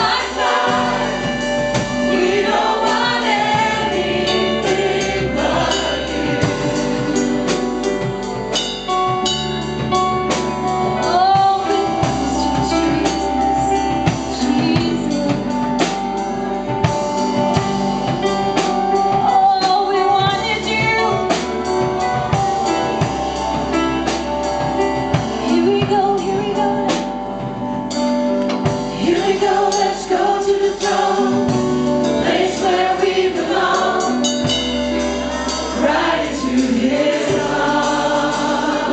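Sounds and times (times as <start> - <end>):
percussion beat: 0.0 - 13.4, 28.7 - 38.9
gospel singers with band: 0.0 - 38.9.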